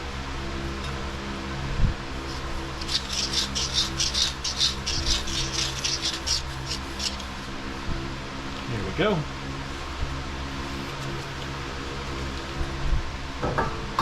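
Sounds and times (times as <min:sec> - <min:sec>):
scrubbing on metal: 0:02.3 - 0:07.5.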